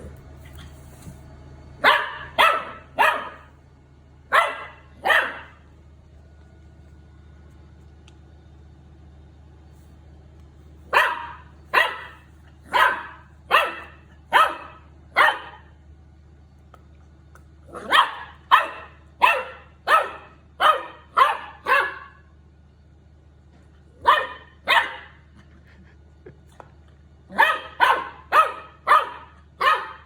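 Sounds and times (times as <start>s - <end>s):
puppy barking: 1.8s - 3.5s, 4.3s - 5.6s, 10.9s - 15.7s, 17.7s - 22.3s, 24.0s - 25.3s, 27.3s - 30.0s.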